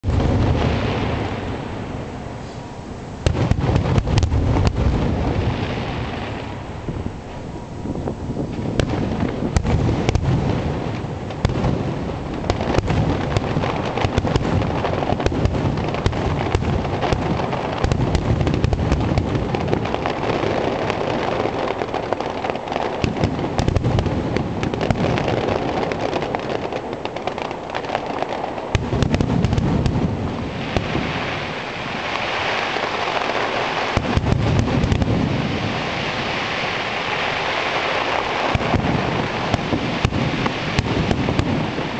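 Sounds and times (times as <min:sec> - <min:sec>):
firework shells booming: 0:00.0 - 0:07.4, 0:08.4 - 0:41.9
fireworks crackling: 0:00.0 - 0:41.9.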